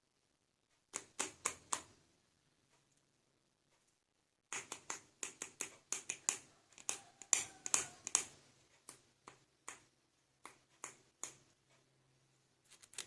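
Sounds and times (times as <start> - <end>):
plastic toy figures clicking: 4.5 - 9.0.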